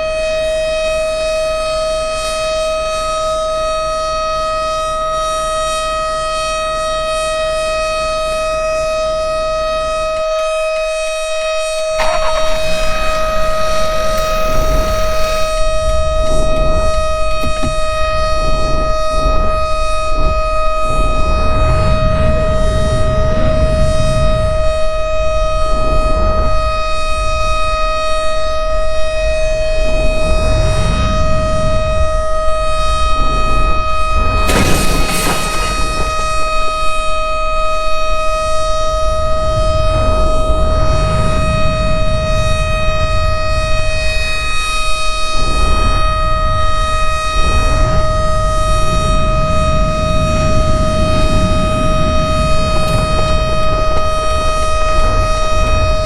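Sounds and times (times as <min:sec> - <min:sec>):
low rumble: 0:11.3 - 0:17.6, 0:34.2 - 0:37.2.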